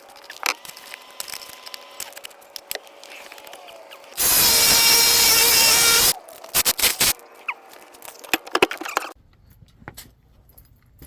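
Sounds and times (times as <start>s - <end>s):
power tool motor whining: 4.2s - 7.1s.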